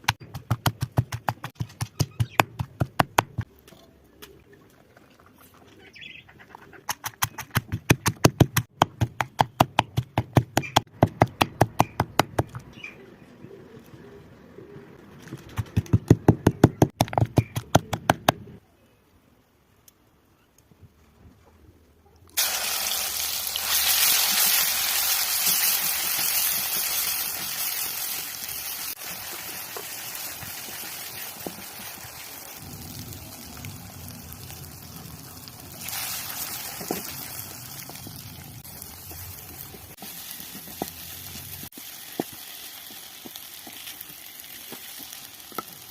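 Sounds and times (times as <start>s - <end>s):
food sizzling in hot oil: 22.4s - 45.9s.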